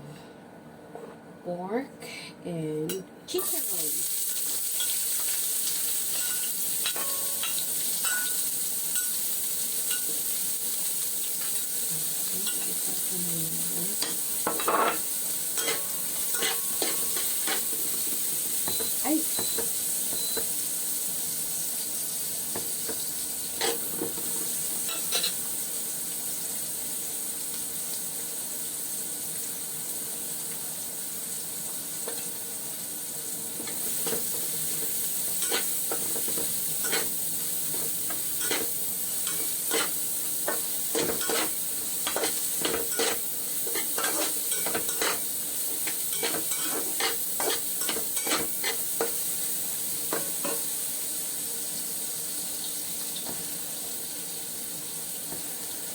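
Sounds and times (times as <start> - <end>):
food sizzling in a pan: 3.3 - 55.9
utensil scraping a pan: 39.3 - 40.0, 41.0 - 45.2.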